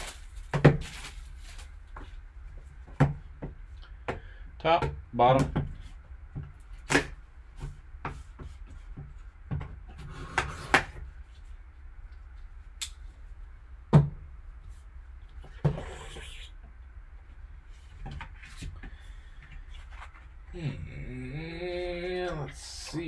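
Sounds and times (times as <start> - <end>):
scraping rustle: 0.0 - 2.2
low steady hum: 0.0 - 23.0.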